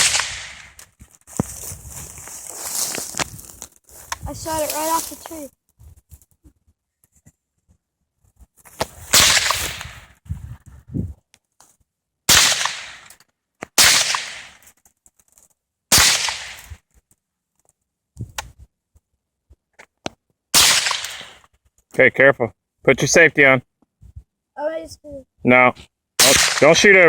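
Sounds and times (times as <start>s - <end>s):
rifle shots: 0.0s - 0.8s, 9.1s - 10.1s, 12.3s - 13.1s, 13.8s - 14.6s, 15.9s - 16.7s, 20.6s - 21.4s, 26.2s - 26.9s.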